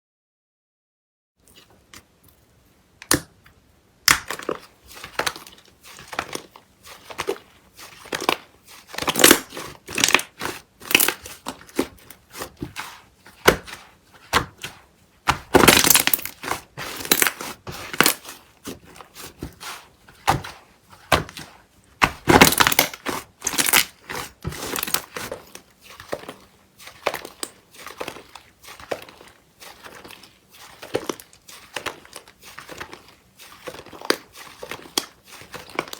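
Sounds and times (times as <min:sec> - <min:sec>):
slime crackling and popping: 0:04.1 - 0:12.8, 0:15.3 - 0:18.4, 0:20.2 - 0:25.6.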